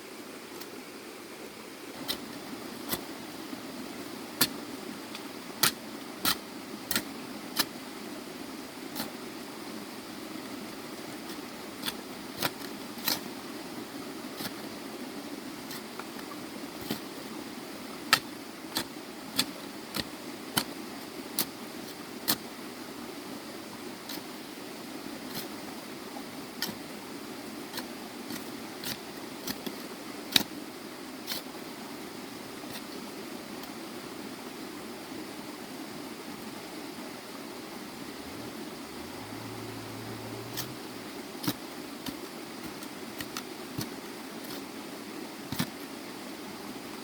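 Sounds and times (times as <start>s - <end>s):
steady background hum: 0.0s - 46.8s
steady low hum: 37.5s - 44.6s.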